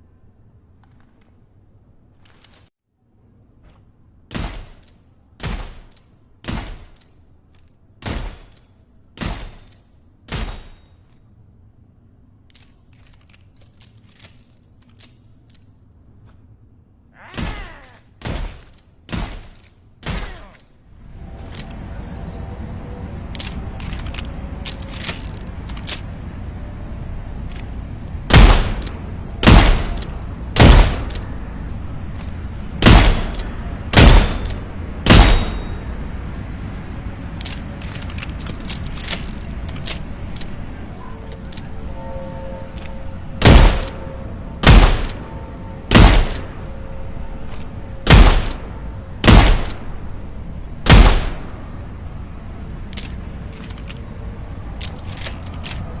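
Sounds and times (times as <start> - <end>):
light metallic clicks: 54.7 - 56.0.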